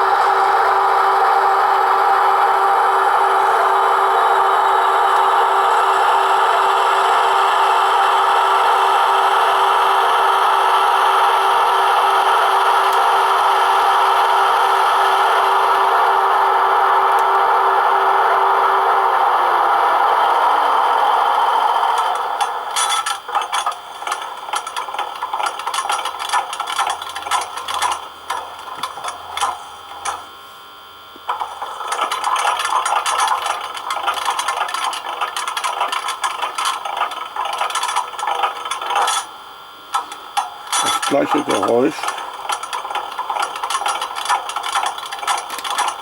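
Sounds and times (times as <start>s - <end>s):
rattling clicks: 22.0s - 30.2s, 31.3s - 39.3s, 39.9s - 46.0s.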